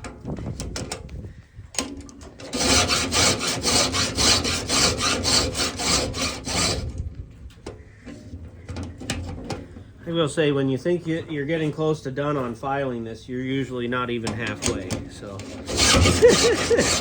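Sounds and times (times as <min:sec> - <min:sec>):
hand file scraping metal: 0:02.4 - 0:09.8, 0:14.2 - 0:17.0.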